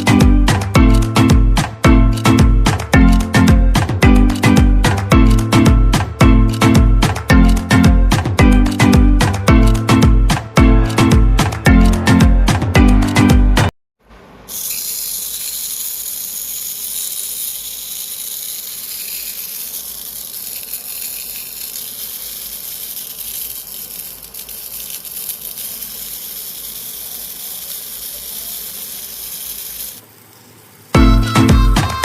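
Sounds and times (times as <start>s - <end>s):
music: 0.0s - 13.7s, 31.0s - 32.0s
mixer grinder motor running: 14.6s - 30.0s.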